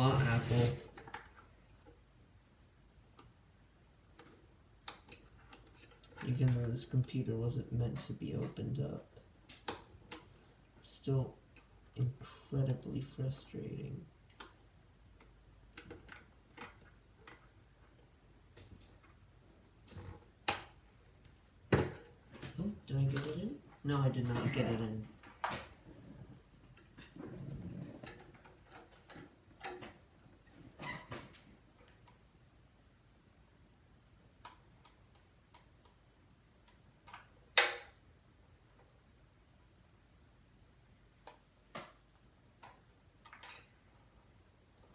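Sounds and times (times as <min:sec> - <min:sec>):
small clicks and taps of tools: 0:09.5 - 0:10.3, 0:41.2 - 0:43.7.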